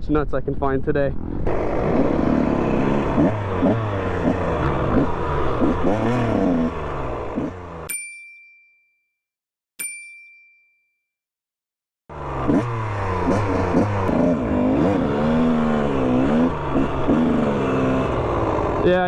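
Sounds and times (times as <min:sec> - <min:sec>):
motorcycle engines revving: 0:01.1 - 0:07.9, 0:12.1 - 0:19.0
bright chime ding: 0:07.9 - 0:08.9, 0:09.8 - 0:10.8.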